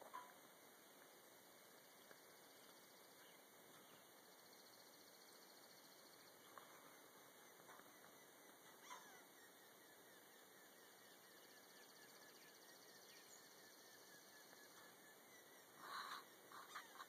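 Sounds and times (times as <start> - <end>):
faint outdoor ambience: 0.0 - 17.0.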